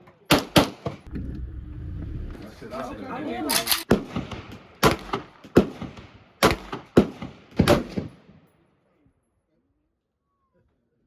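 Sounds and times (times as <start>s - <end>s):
gunshots with echo: 0.3s - 1.1s, 3.6s - 8.4s.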